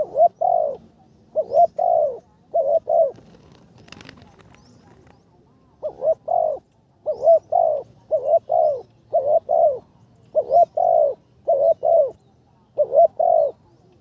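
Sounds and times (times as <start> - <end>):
dove cooing: 0.0 - 13.8.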